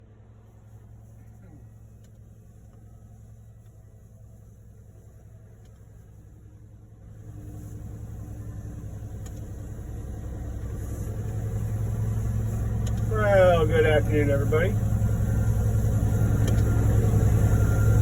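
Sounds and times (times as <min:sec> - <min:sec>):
truck engine running: 0:00.0 - 0:18.0.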